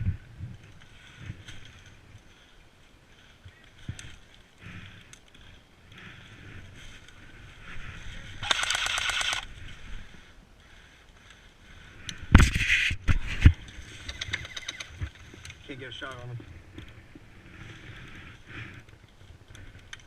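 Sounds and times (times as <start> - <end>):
airsoft gun full-auto burst: 8.4 - 9.5.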